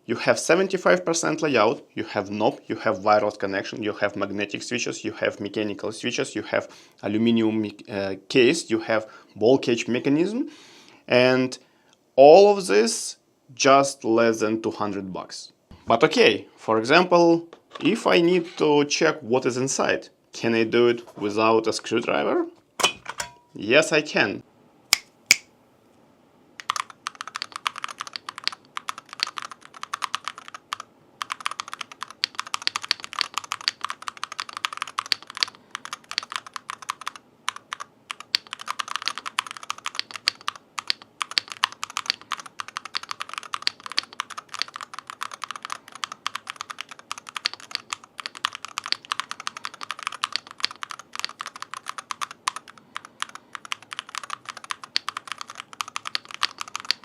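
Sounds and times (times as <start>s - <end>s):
fast keyboard typing: 26.6s - 57.0s.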